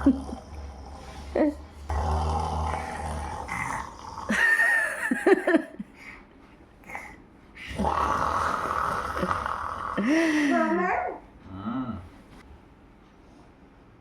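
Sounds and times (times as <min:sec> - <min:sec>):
child imitating snoring: 0:00.0 - 0:04.5, 0:06.8 - 0:11.2.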